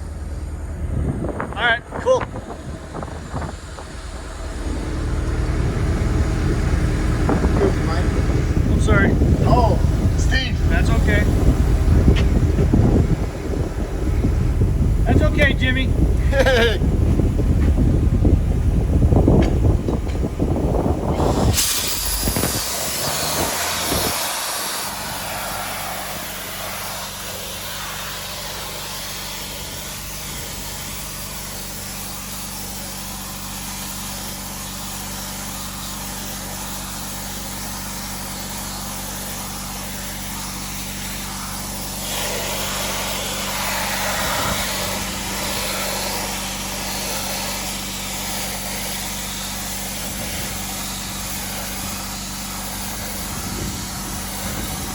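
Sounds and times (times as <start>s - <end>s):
motor hum: 0.0s - 54.9s
sandblaster hiss: 15.0s - 17.0s, 20.6s - 54.9s.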